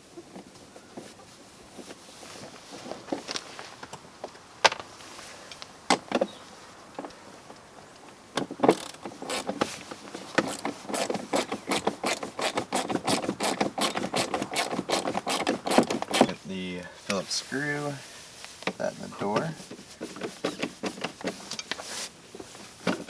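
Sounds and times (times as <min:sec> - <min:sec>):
ratchet wrench clicking: 0:08.7 - 0:09.5, 0:10.4 - 0:16.3.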